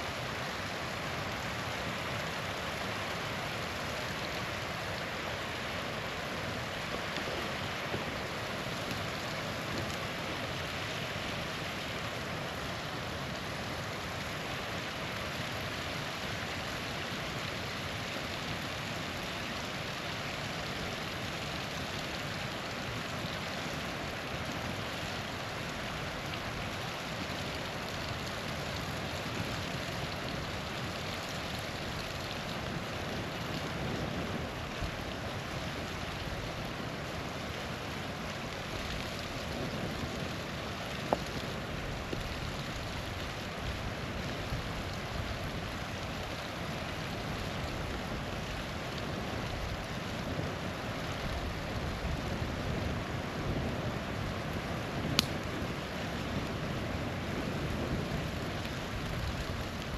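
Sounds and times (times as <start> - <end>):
small waterfall rushing: 0.0 - 59.9
faint ticks: 55.2 - 55.4.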